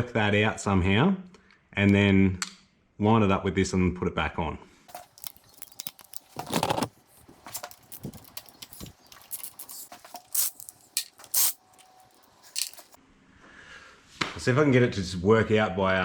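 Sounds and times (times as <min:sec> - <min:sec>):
metal parts clicking and knocking: 0:04.9 - 0:13.0
metallic rattle: 0:04.9 - 0:13.0.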